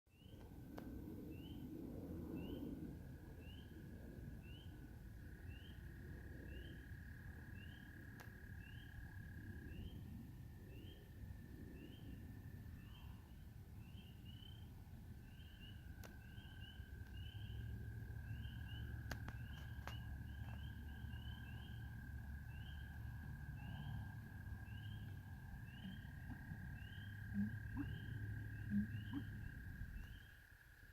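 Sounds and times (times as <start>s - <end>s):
low rumble: 0.1s - 30.6s
frogs chirping: 3.4s - 30.9s
high-pitched drone: 25.0s - 29.7s.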